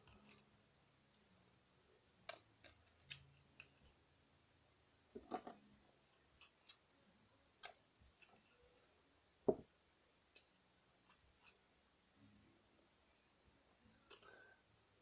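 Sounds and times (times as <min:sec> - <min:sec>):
clicks and taps of small objects: 0:02.2 - 0:04.0, 0:05.1 - 0:05.6.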